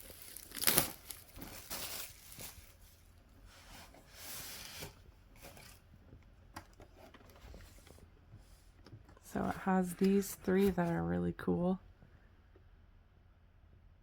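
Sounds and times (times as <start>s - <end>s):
packaging rustling: 0.0s - 2.8s.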